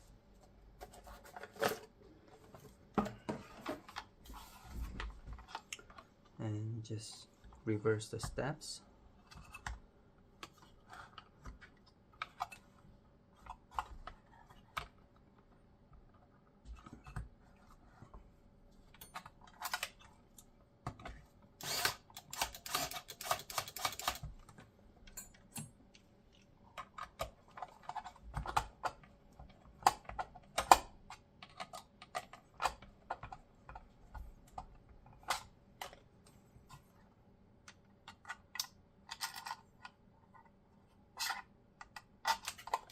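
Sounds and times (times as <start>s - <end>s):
plastic and metal parts clicking: 20.9s - 25.7s, 26.3s - 36.0s, 41.2s - 42.9s.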